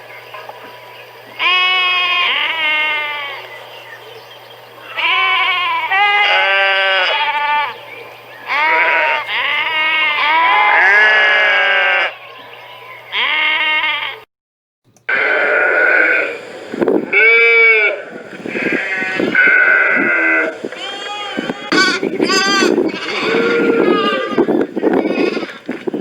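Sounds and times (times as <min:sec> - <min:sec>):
sheep bleating: 0:01.4 - 0:03.5, 0:04.8 - 0:07.8, 0:08.5 - 0:12.2, 0:13.1 - 0:14.2, 0:15.1 - 0:16.4, 0:17.1 - 0:25.7.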